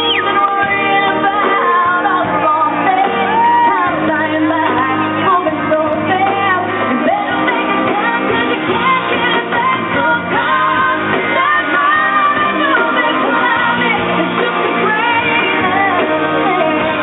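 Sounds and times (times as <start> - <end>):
band with guitar and backing chords: 0.0 - 17.0
woman singing a pop-country ballad: 0.0 - 17.0.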